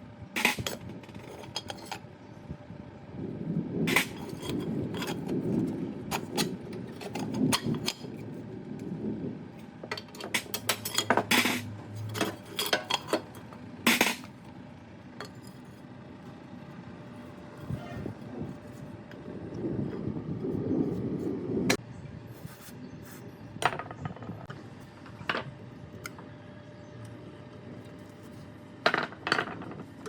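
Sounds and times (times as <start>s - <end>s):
metal tools clinking: 0.4s - 2.0s, 9.9s - 14.3s
rough rubbing noise: 17.5s - 18.9s.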